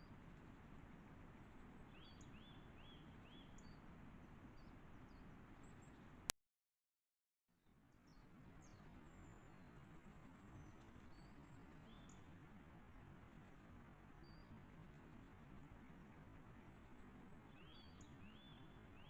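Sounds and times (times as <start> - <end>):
small birds chirping: 1.8 - 3.8, 8.0 - 12.4, 17.4 - 19.0.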